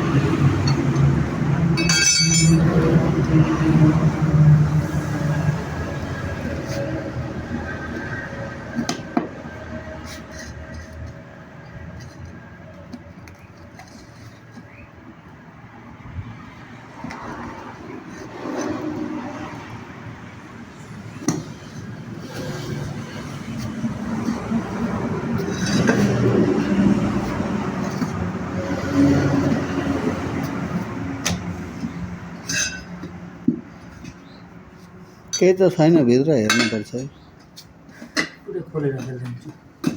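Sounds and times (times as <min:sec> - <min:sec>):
vehicle noise: 0:00.0 - 0:39.9
sharp metallic clinks: 0:01.8 - 0:02.8.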